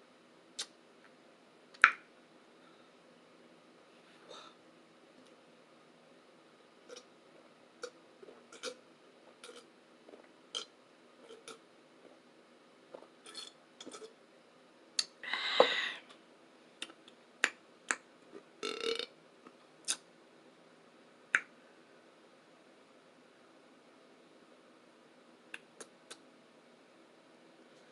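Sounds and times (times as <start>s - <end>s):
lip smacks: 0.6s - 0.8s
close burp: 18.6s - 19.1s.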